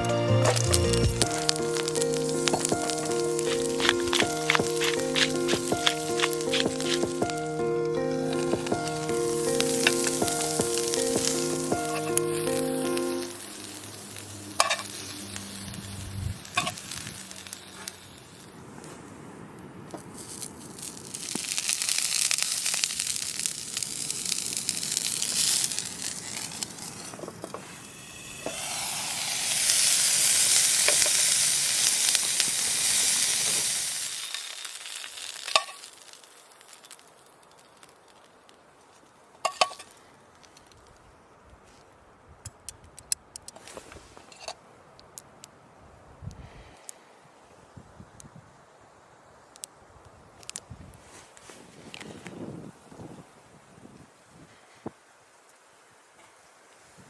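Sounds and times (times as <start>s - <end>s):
meat sizzling in a pan: 0.6s - 7.5s, 8.3s - 18.4s, 20.2s - 27.2s, 27.8s - 37.9s.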